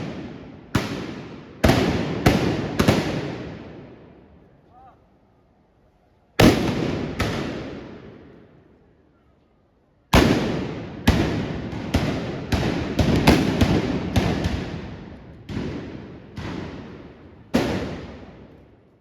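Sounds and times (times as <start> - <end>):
blunderbuss shots: 6.4 - 8.2.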